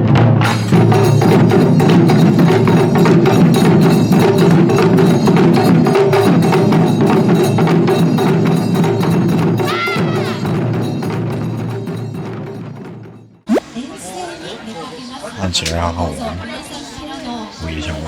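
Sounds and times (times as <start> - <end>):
drums: 0.0 - 13.8
wood-block strikes: 0.4 - 13.3.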